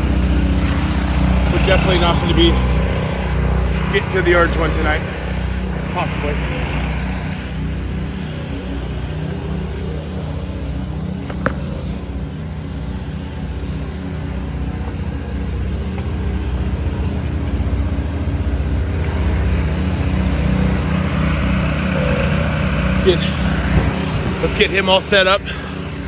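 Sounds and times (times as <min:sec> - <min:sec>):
engine running steadily: 0:00.0 - 0:26.0.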